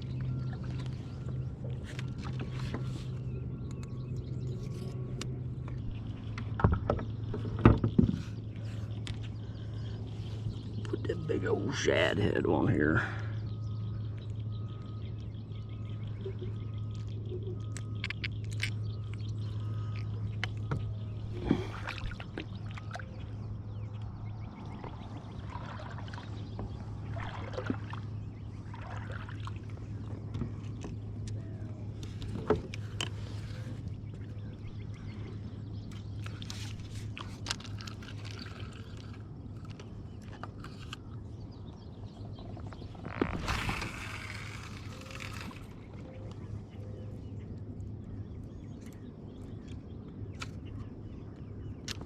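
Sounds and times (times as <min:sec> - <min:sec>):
steady low hum: 0:00.0 - 0:52.0
water sloshing: 0:16.3 - 0:41.0, 0:42.5 - 0:46.4.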